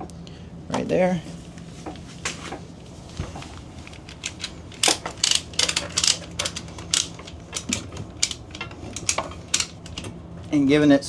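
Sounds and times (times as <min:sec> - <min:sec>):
ratchet strap clicking: 0:03.9 - 0:10.2.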